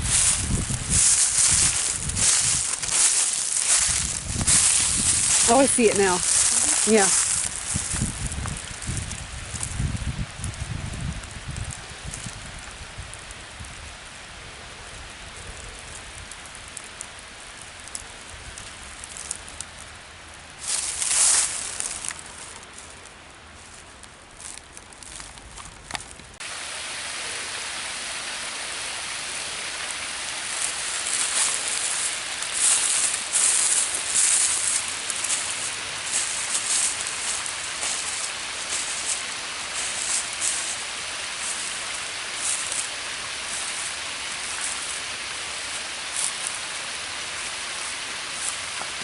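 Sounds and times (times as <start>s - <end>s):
waterfall rushing: 0.0s - 7.9s, 26.4s - 49.0s
crackling rustles: 0.0s - 26.5s, 28.2s - 49.0s.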